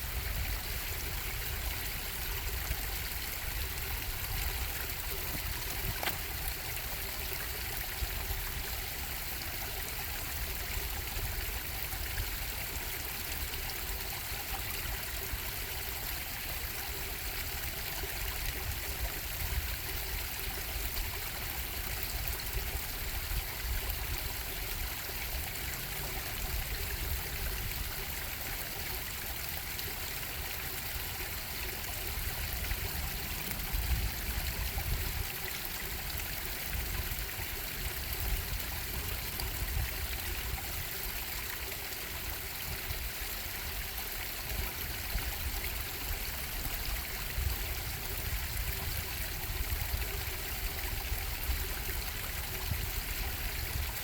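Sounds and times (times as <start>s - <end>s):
water rushing over rocks: 0.1s - 10.5s.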